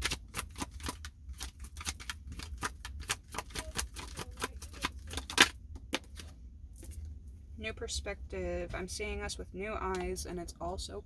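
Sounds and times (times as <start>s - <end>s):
cards being shuffled: 0.0s - 6.4s.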